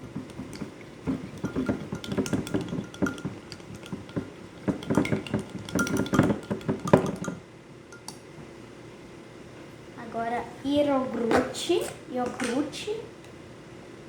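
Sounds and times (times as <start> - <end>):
utensil tapping against bowl: 0.0 - 8.2.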